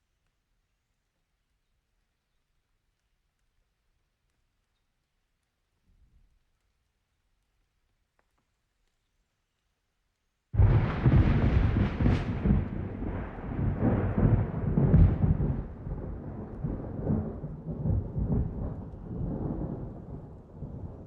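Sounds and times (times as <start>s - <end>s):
steady rain: 0.0s - 21.0s
thunder rolling: 10.6s - 21.0s.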